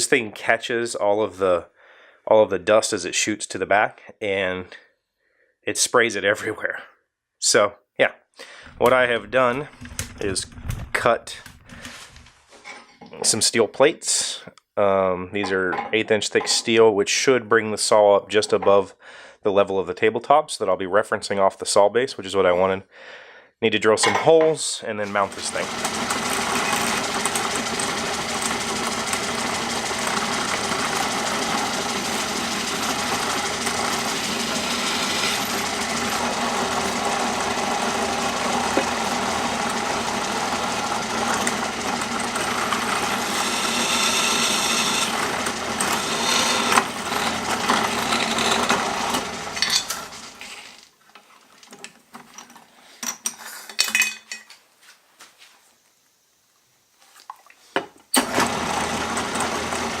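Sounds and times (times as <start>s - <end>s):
electric drill boring steel: 25.1s - 50.8s, 58.2s - 60.0s.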